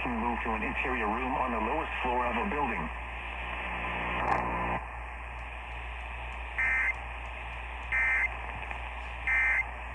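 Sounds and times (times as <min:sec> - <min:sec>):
electrical hum: 0:00.0 - 0:09.9
radio hiss: 0:00.0 - 0:09.9
digital data tone bursts: 0:06.6 - 0:06.9, 0:07.9 - 0:08.3, 0:09.3 - 0:09.6.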